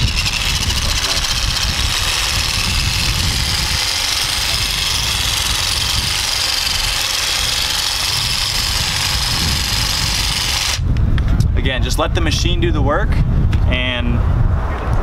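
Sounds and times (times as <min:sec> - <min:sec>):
massage gun motor buzzing: 0:00.0 - 0:10.8.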